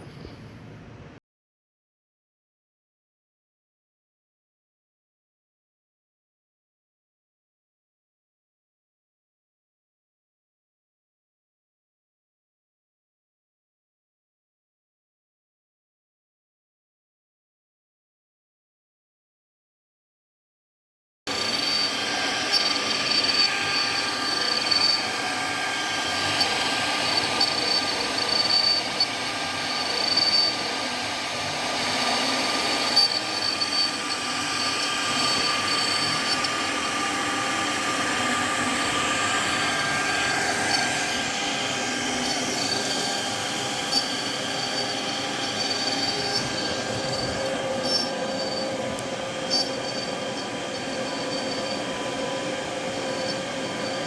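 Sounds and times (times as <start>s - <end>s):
cnc router metallic squeal: 21.3s - 54.0s.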